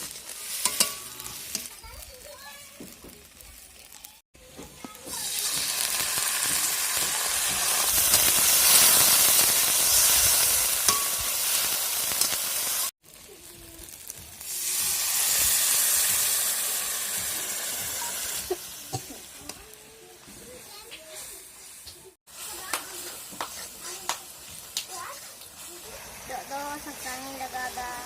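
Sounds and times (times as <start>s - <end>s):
food sizzling in hot fat: 0.0s - 28.0s.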